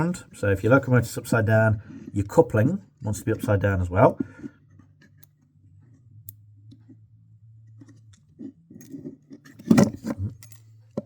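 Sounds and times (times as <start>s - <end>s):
parts scraping: 7.7s - 11.0s.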